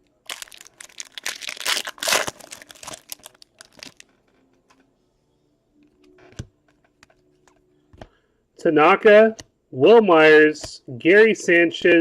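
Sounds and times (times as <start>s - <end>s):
foil wrapper tearing and crinkling: 0.3s - 4.0s.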